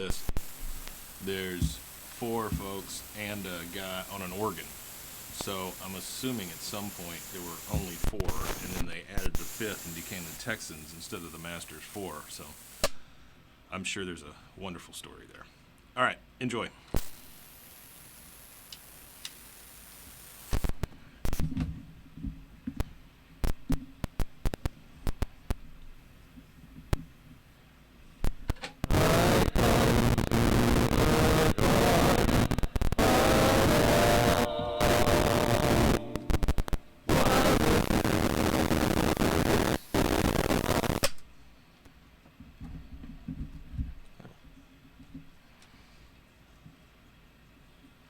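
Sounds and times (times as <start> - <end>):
faint high whine: 0.0 - 12.9, 16.8 - 21.1, 28.8 - 41.1
faint tape hiss: 0.0 - 48.0
low hum: 28.9 - 38.5.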